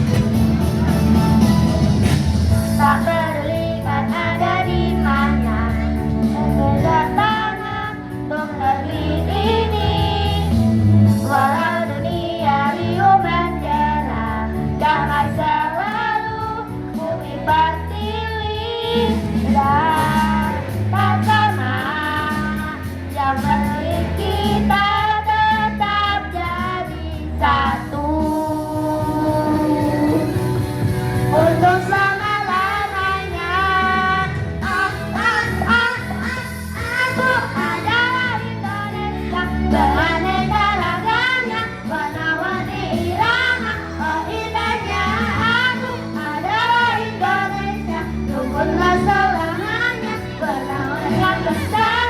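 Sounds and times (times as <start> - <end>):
backing track with bass: 0.0 - 52.0
children's choir singing: 2.7 - 22.7, 31.3 - 52.0.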